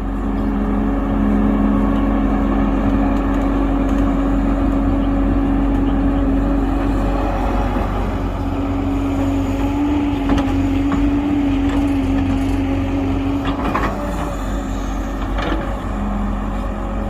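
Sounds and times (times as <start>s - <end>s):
excavator engine running: 0.0s - 17.0s.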